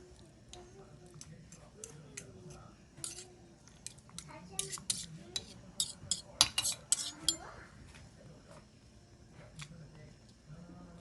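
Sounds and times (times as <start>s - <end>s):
utensils clinking against dishes: 3.0s - 4.0s, 4.6s - 7.4s.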